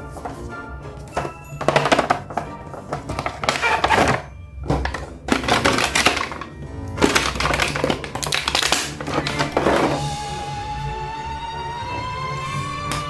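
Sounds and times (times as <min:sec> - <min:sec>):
background music: 0:00.0 - 0:13.0
plastic clicking and crackling: 0:01.0 - 0:10.0.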